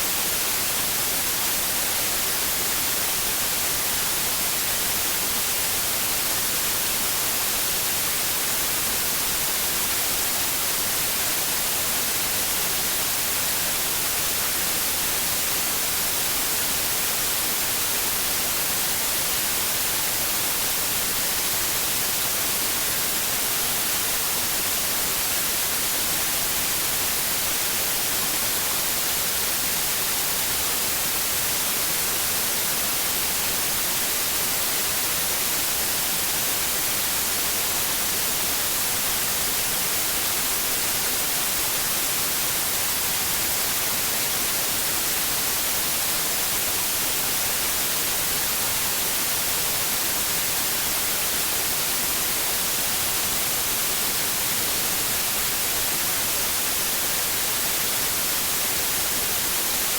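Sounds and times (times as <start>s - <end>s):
white noise hiss: 0.0s - 59.9s.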